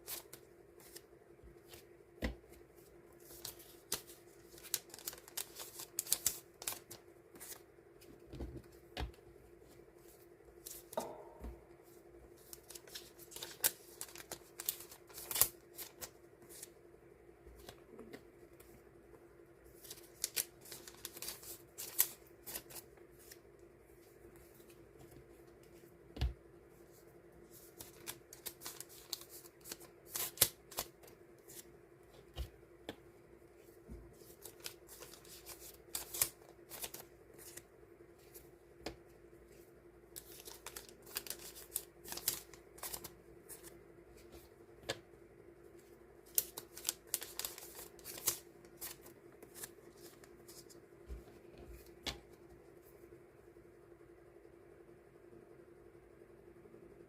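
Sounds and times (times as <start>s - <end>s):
paper stickers rustling: 3.2s - 7.6s, 11.8s - 16.7s, 27.5s - 32.5s, 33.6s - 37.6s, 40.2s - 44.5s, 46.2s - 51.2s.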